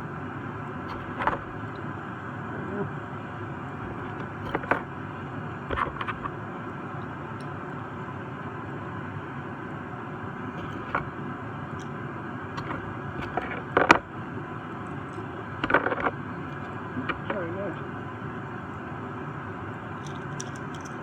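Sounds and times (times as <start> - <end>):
toy car clicks and taps: 20.0 - 21.0.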